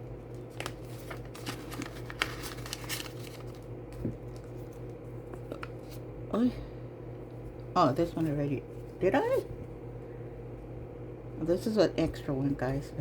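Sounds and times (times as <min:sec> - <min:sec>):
steady low hum: 0:00.0 - 0:13.0
paper money and cards rustling: 0:00.2 - 0:06.1.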